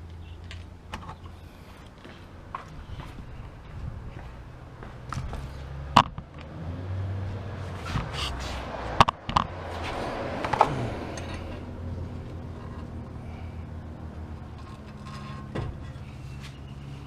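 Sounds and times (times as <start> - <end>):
steady low hum: 0.0 - 17.0
sharp knocks and clicks: 6.0 - 6.5, 9.0 - 9.5
rustling or scraping: 7.6 - 8.8, 14.4 - 17.0.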